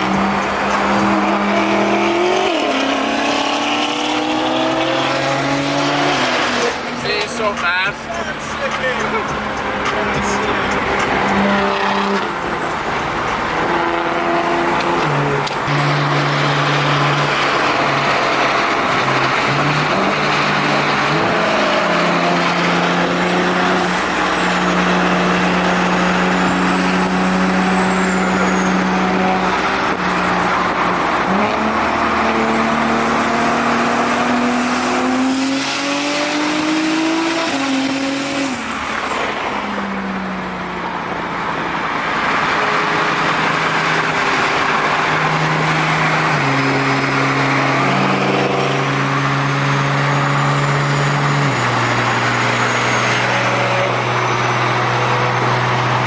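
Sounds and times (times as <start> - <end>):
car engine and exhaust: 0.0 - 56.0.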